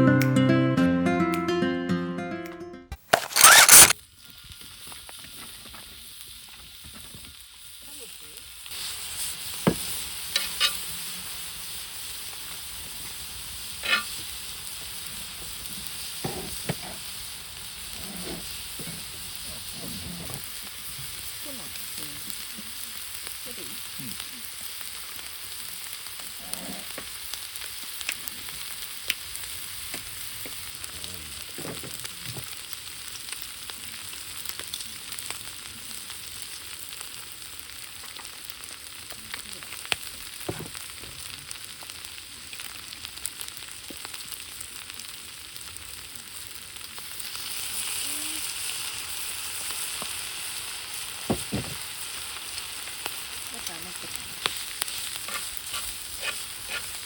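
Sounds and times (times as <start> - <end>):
utensils clicking and knocking: 3.0 - 3.9
food sizzling in a pan: 3.1 - 57.0.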